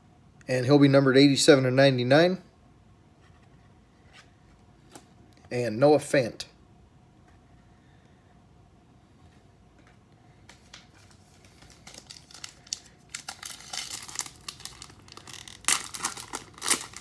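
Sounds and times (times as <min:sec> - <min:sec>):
wrapper crinkling and tearing: 0:10.6 - 0:17.0.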